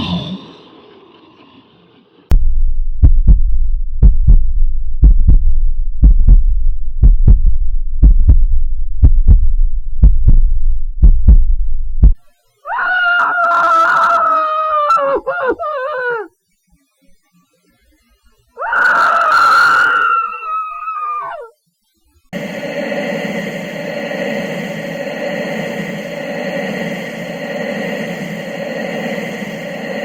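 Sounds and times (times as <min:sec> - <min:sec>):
heartbeat thumps: 0:02.3 - 0:12.2
low rumble: 0:02.3 - 0:12.2, 0:22.4 - 0:30.0
long high scream: 0:12.6 - 0:16.3, 0:18.6 - 0:21.6.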